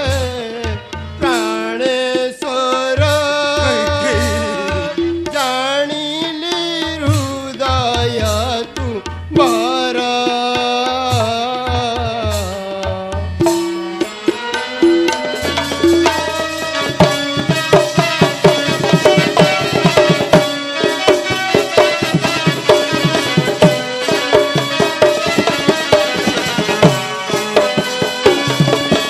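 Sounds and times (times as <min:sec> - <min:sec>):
rapid hand drum strokes: 0:03.0 - 0:29.0
sustained melodic instrument: 0:13.4 - 0:29.0.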